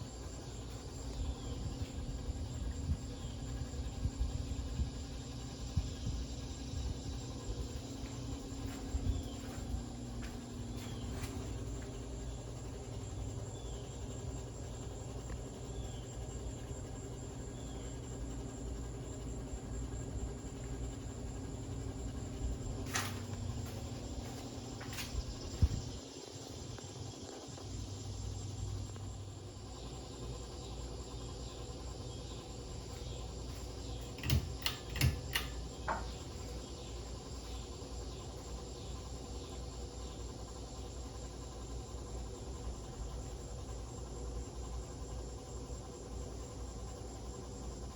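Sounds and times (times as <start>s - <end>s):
ceiling fan motor hum: 0.0s - 47.9s
sharp clicks: 34.0s - 36.1s.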